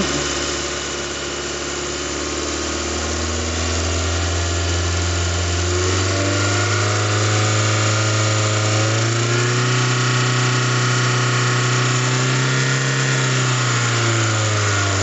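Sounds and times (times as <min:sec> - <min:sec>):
car engine idling: 0:00.0 - 0:05.9.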